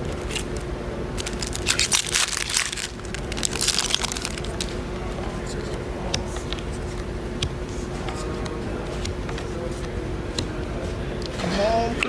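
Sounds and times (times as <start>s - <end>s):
foil wrapper crinkling: 1.2s - 4.8s.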